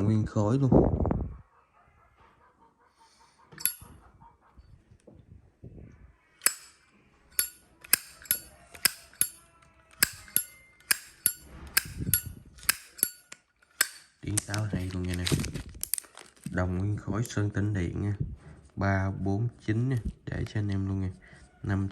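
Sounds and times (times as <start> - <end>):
lighter lid clicking: 3.6 - 3.8.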